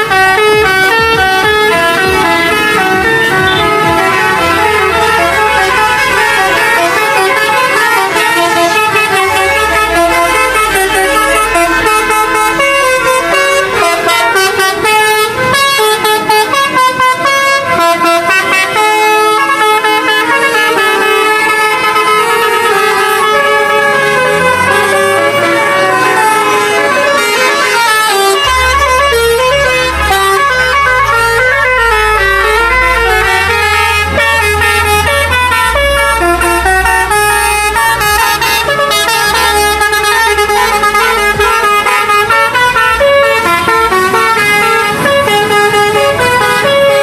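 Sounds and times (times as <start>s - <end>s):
bus horn playing fast melody: 0.0s - 47.0s
deep low tones: 28.4s - 41.6s.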